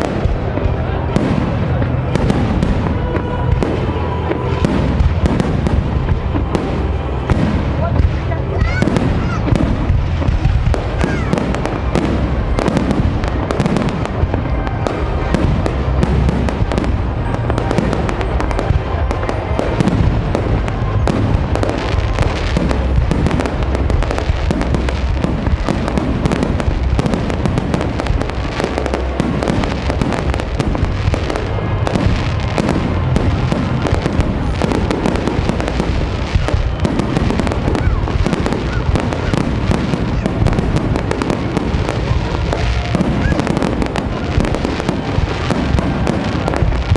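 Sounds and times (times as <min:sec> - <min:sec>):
fireworks bursts and crackling bangs: 0:00.0 - 0:46.9
low rumble: 0:00.0 - 0:46.9.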